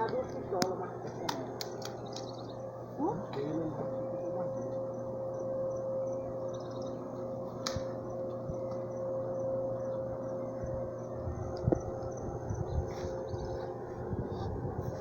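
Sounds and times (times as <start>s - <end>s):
steady background hum: 0.0s - 15.0s
sharp click: 7.6s - 7.9s.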